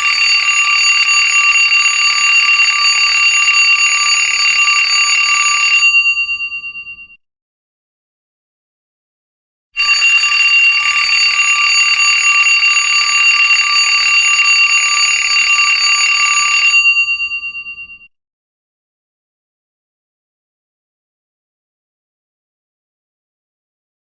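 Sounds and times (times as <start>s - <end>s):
alarm clock bell ringing: 0.0s - 7.2s, 9.8s - 18.1s.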